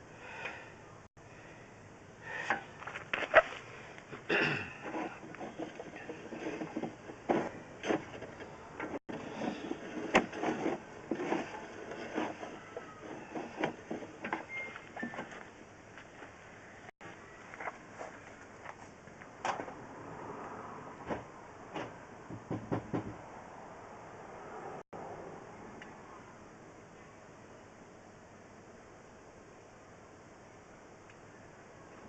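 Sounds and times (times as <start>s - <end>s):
equipment knocks and clicks: 21.1s - 23.2s.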